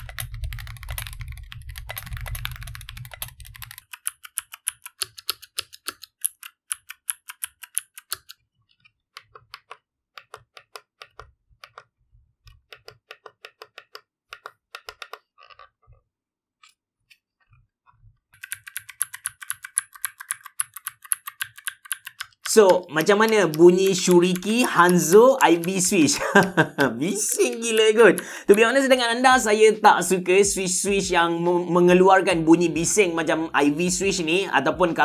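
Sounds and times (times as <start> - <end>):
mechanical keyboard typing: 0.0 - 8.4, 9.1 - 11.9, 12.5 - 15.7, 18.4 - 29.4.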